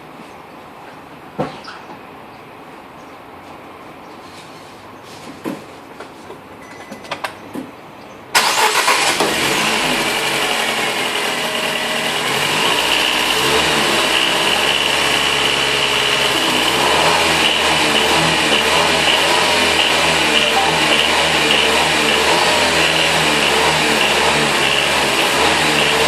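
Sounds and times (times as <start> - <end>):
car engine starting and idling: 8.3 - 26.0
engine creaking: 8.3 - 26.0
high-pitched tone: 20.1 - 22.8.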